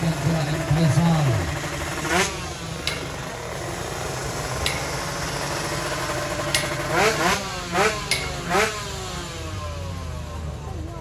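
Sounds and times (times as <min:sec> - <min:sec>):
sharp exhaust cracks: 0:00.0 - 0:10.6
motorcycle engines revving: 0:00.0 - 0:11.0.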